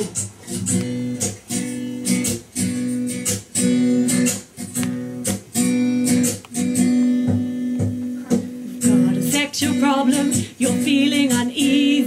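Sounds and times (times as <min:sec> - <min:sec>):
acoustic guitar strumming chords: 0:00.0 - 0:12.0.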